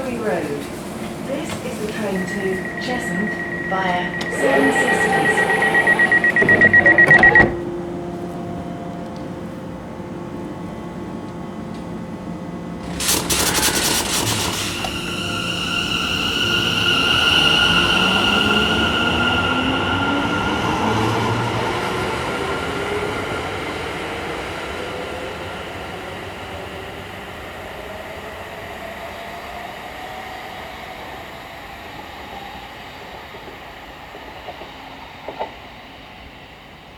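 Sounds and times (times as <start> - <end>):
electric train noise: 0.0 - 36.9
traction motor whine rising: 1.7 - 8.0, 12.7 - 27.8.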